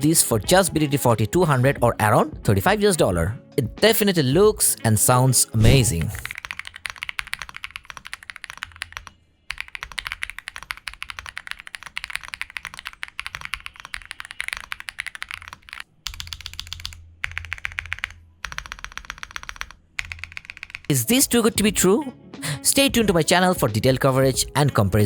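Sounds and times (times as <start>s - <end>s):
mechanical keyboard typing: 5.6s - 20.9s.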